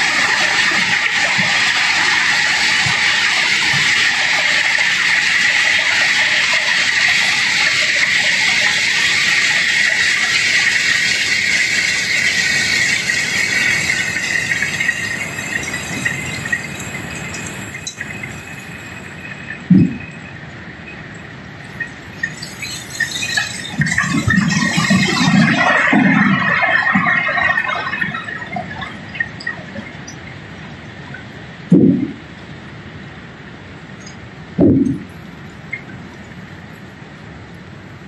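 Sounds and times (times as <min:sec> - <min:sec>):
low thump: 0:31.7 - 0:32.2.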